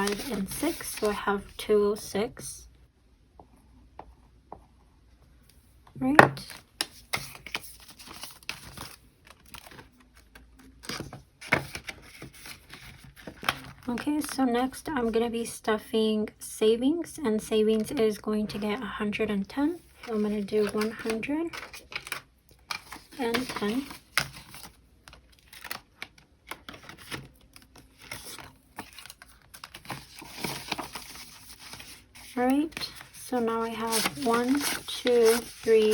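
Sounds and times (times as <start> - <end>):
paper bills and envelope rustling: 0.0 - 2.1, 6.4 - 14.4, 19.7 - 35.9.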